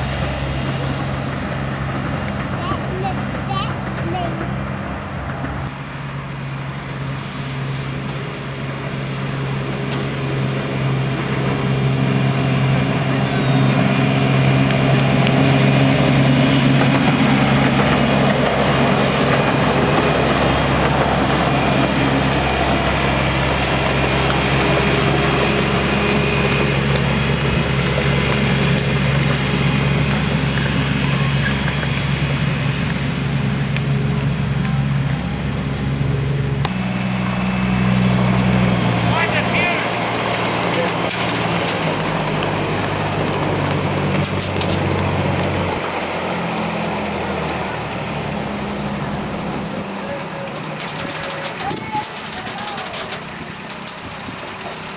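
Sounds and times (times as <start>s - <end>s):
miniature locomotive engine humming: 0.0s - 54.9s.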